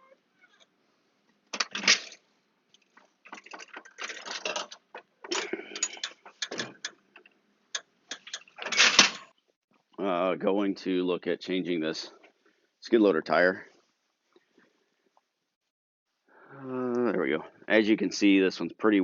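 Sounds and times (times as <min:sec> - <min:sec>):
hard objects clattering: 0:02.8 - 0:07.2.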